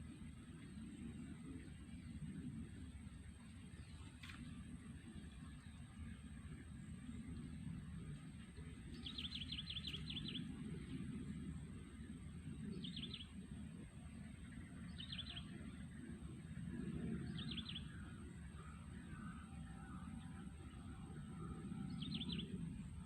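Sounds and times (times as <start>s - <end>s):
low outdoor rumble: 0.0s - 23.0s
small bird chirping: 9.0s - 10.5s.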